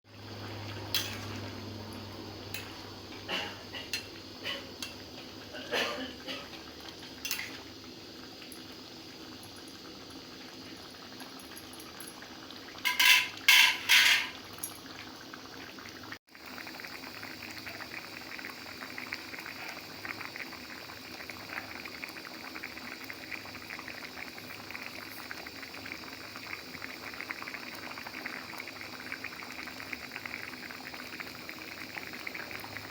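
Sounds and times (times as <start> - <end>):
curry bubbling and sizzling: 0.1 - 32.9
utensil clinking against pan: 12.9 - 14.4.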